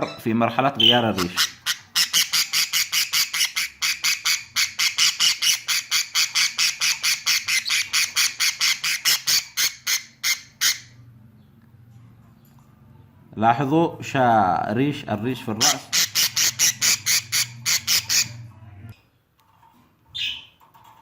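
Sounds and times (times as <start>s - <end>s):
budgerigar squawking: 0.8s - 11.0s, 15.5s - 18.4s.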